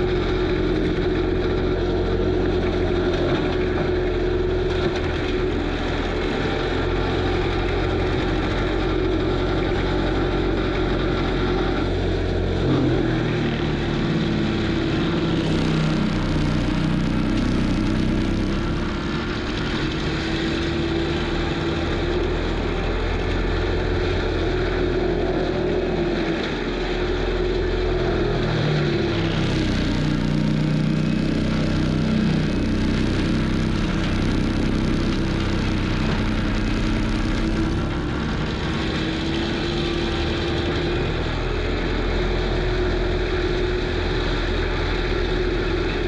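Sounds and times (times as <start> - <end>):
diesel engine running hard: 0.0 - 46.0
mulcher drive whine: 0.0 - 46.0.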